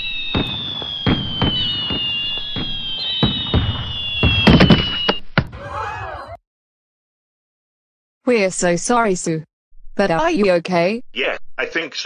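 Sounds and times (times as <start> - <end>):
fireworks whistles falling in pitch: 0.0 - 5.4
fireworks bangs: 0.0 - 5.6.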